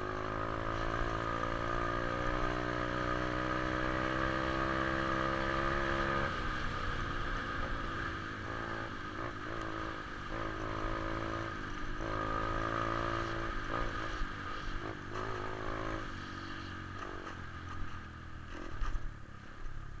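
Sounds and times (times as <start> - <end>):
pit bike engine revving: 0.0 - 17.9.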